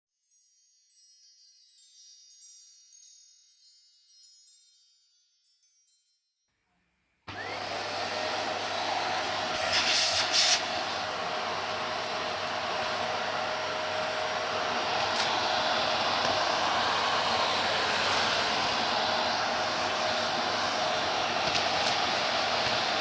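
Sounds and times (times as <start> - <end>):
high tinkling chime tones: 0.1 - 6.6.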